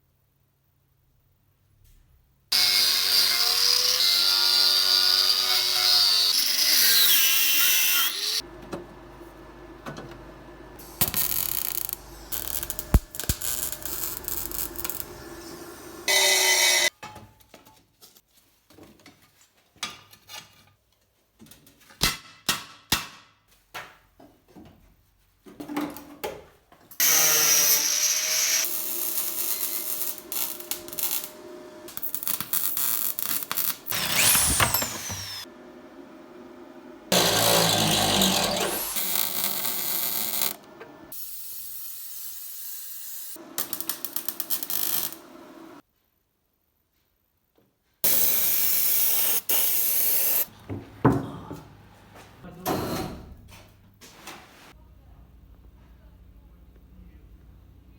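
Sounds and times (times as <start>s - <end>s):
power tool running: 2.6s - 16.9s, 27.0s - 41.2s
scraping: 29.5s - 35.4s.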